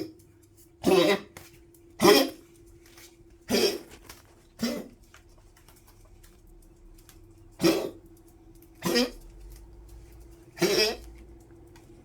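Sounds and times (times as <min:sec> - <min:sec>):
dog coughing: 0:00.8 - 0:01.3, 0:02.0 - 0:02.4, 0:03.5 - 0:03.9, 0:04.6 - 0:05.0, 0:07.6 - 0:08.0, 0:08.8 - 0:09.2, 0:10.6 - 0:11.0.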